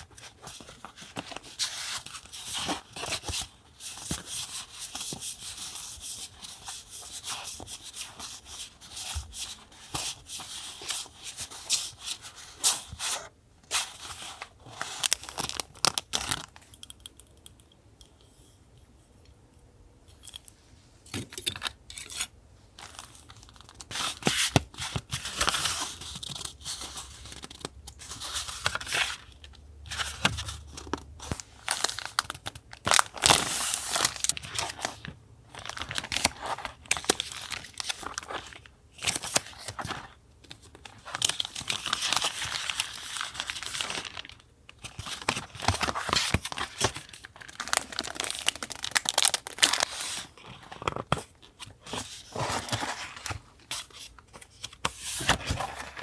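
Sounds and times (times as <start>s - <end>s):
paper crinkling: 22.8s - 56.0s.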